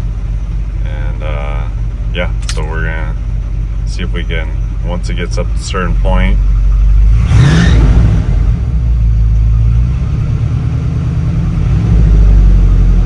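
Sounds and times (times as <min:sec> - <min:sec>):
engine revving then rough idle: 0:05.7 - 0:13.0.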